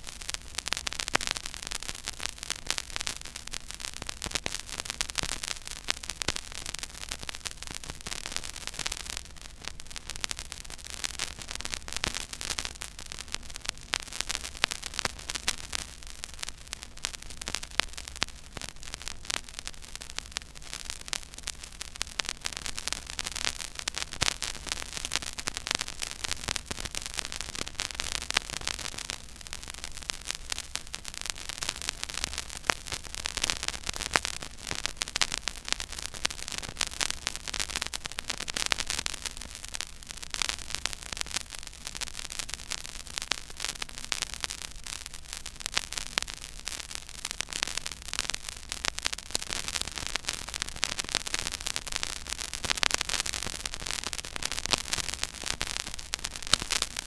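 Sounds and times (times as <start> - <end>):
vinyl crackles and pops: 0.0 - 57.0
vinyl surface hiss: 0.0 - 57.0.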